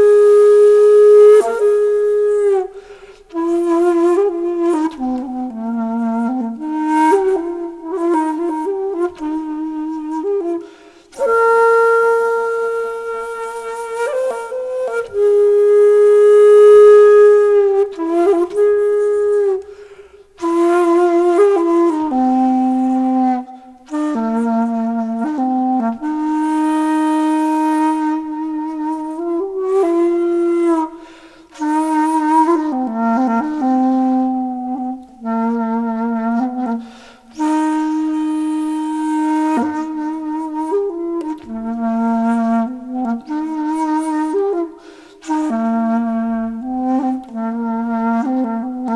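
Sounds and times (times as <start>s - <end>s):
solo flute melody: 0.0s - 48.9s.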